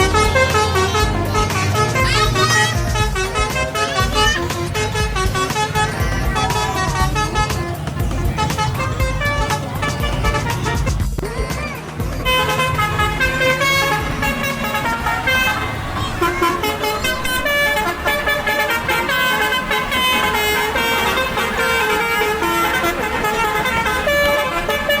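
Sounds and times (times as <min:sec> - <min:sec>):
steady low rumble: 0:00.0 - 0:14.9
multi-tone bus horn melody: 0:00.0 - 0:25.0.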